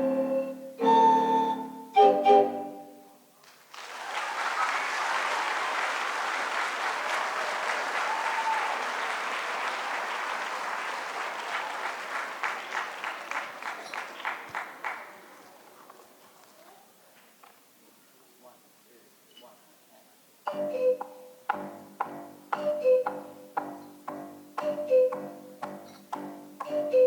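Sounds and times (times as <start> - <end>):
audience applauding: 3.4 - 16.2.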